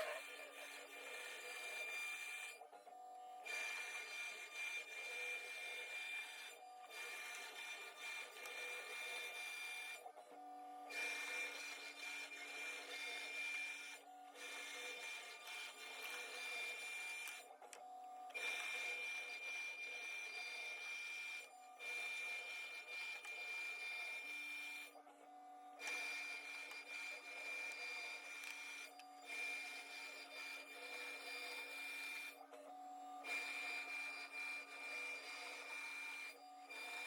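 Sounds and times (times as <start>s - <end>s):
plastic cutting noise: 0.0s - 0.6s, 11.1s - 24.8s, 25.7s - 37.0s
machine spindle whine: 0.0s - 37.0s.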